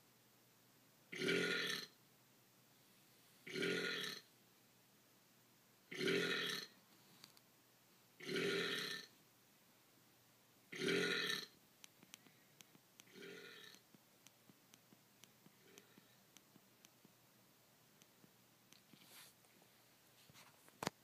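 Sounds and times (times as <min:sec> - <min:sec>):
man burping: 0:01.1 - 0:02.0, 0:03.5 - 0:04.2, 0:05.9 - 0:06.7, 0:08.2 - 0:09.1, 0:10.7 - 0:11.5, 0:13.1 - 0:13.8.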